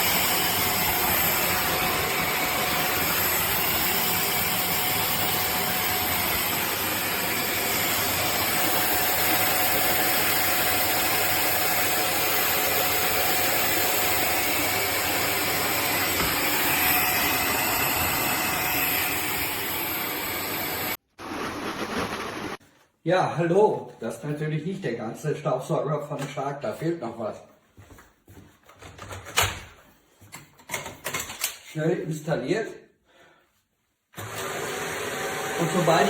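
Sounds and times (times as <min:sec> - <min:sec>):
vacuum cleaner running: 0:00.0 - 0:22.6, 0:34.2 - 0:36.0.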